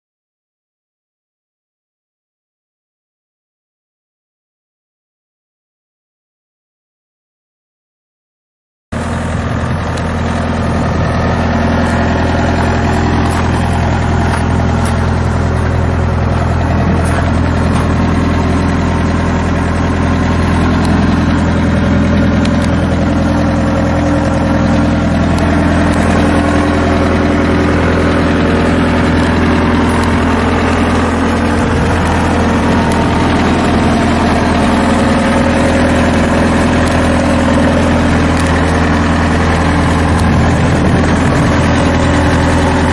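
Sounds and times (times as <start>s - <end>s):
diesel engine idling: 9.0s - 42.9s.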